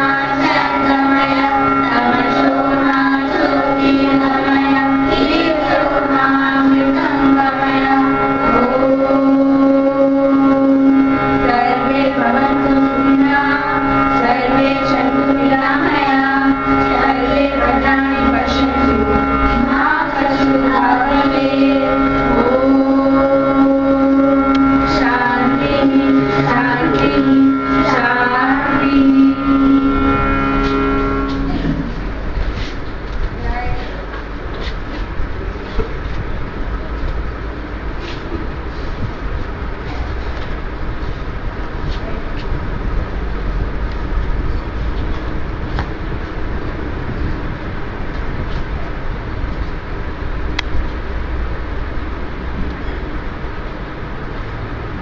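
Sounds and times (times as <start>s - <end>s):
children singing in unison: 0.0s - 32.0s
held drone note: 0.0s - 55.0s.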